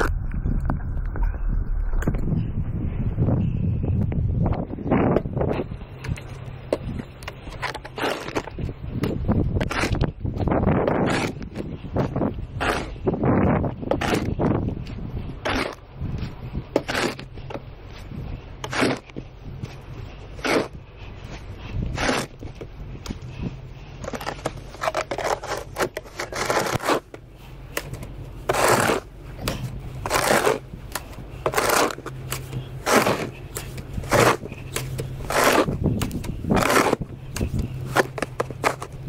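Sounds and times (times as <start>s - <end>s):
low steady hum: 0.0s - 39.0s
snow shovel scraping snow: 7.9s - 8.5s, 10.9s - 14.4s, 15.4s - 17.3s, 18.0s - 22.4s, 23.4s - 27.2s, 28.4s - 39.0s.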